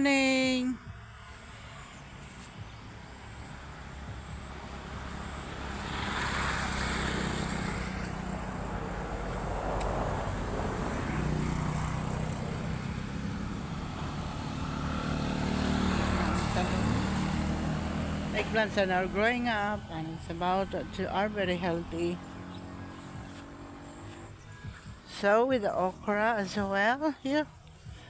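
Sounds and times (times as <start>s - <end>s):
distant engine droning: 0.0s - 28.0s.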